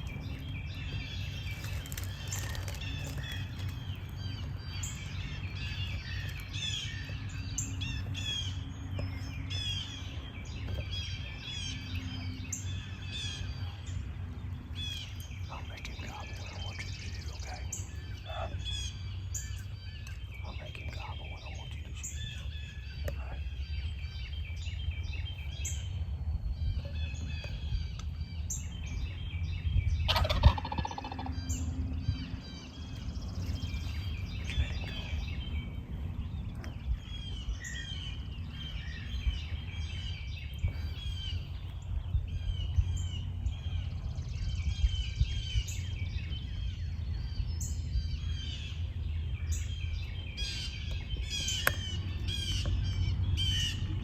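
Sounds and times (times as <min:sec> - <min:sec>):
songbirds chirping: 0:00.0 - 0:54.0
turkey gobbling: 0:30.1 - 0:31.3.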